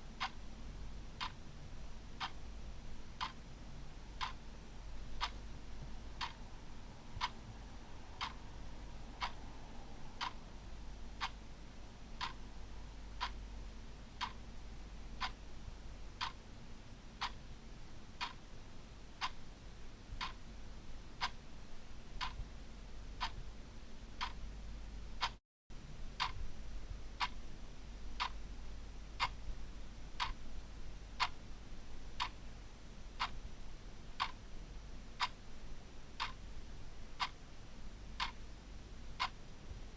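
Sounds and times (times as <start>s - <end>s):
low steady hum: 0.0s - 39.9s
clock ticking: 0.2s - 0.4s, 4.2s - 4.4s, 5.2s - 5.4s, 6.2s - 6.4s, 7.2s - 7.4s, 8.2s - 8.4s, 11.2s - 11.4s, 12.2s - 12.4s, 13.2s - 13.4s, 14.2s - 14.4s, 15.2s - 15.4s, 16.2s - 16.4s, 18.2s - 18.4s, 20.2s - 20.4s, 23.2s - 23.4s, 24.2s - 24.4s, 26.2s - 26.4s, 31.2s - 31.4s, 33.2s - 33.4s, 34.2s - 34.4s, 36.2s - 36.4s, 37.2s - 37.4s, 38.2s - 38.4s.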